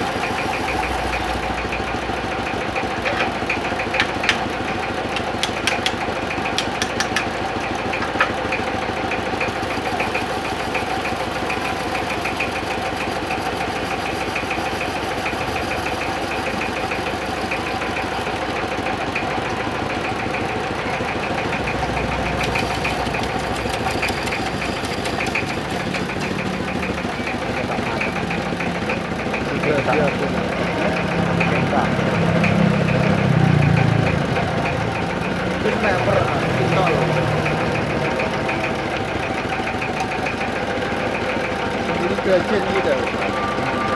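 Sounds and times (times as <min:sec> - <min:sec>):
lathe turning wood: 0:00.0 - 0:43.9
sharp clicks: 0:05.1 - 0:07.4.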